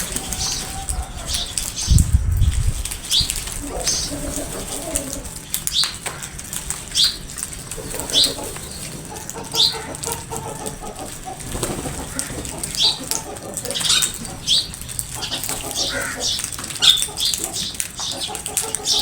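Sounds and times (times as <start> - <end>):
high-pitched falling calls: 0.0 - 2.0
crows calling harshly: 9.1 - 19.0.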